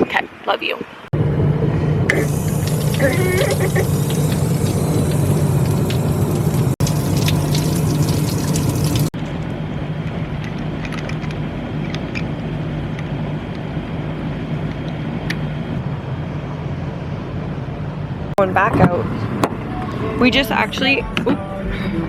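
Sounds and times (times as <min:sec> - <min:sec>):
vehicle engine hum: 0:00.9 - 0:22.0
road noise hiss: 0:01.9 - 0:09.1
small clicks and rattles: 0:10.4 - 0:12.3.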